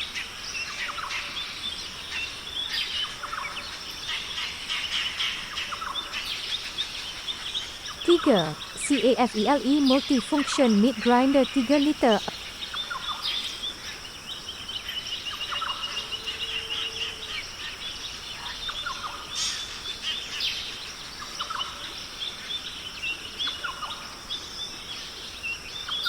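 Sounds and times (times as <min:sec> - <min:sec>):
steady outdoor hiss: 0:00.0 - 0:26.0
birds chirping: 0:07.0 - 0:12.8.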